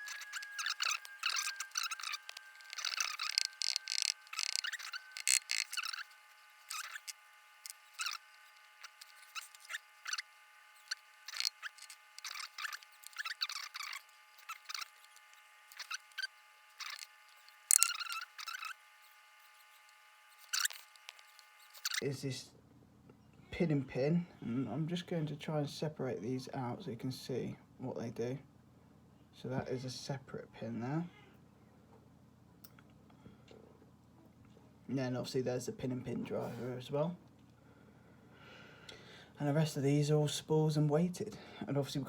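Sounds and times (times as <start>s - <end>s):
lock core clicks and scrapes: 0.0s - 22.0s.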